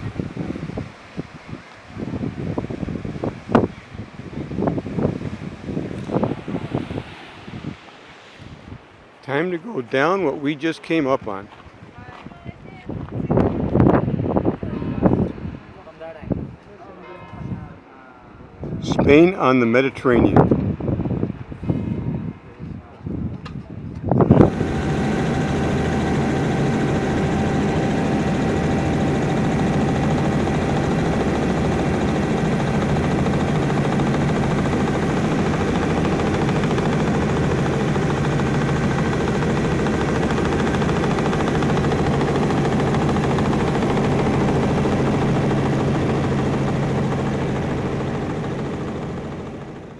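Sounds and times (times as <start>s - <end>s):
engine drone: 24.3s - 49.9s
held tones: 24.4s - 49.9s.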